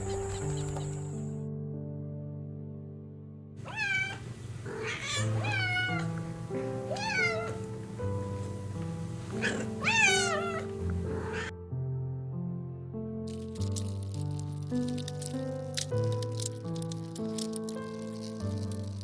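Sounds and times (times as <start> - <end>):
background music with held notes: 0.0 - 19.0
cat meowing: 3.6 - 7.7, 9.3 - 11.5.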